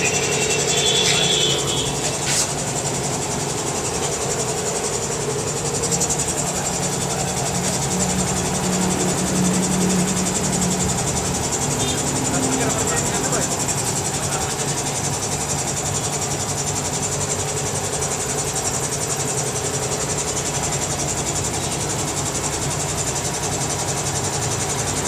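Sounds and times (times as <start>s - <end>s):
brief high tone: 0.0s - 2.1s
machinery humming: 0.0s - 25.0s.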